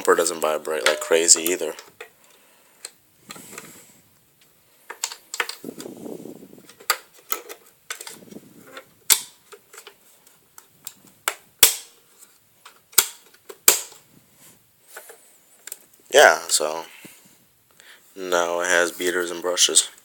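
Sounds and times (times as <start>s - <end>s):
hard parts clicking and knocking: 0.8s - 2.2s.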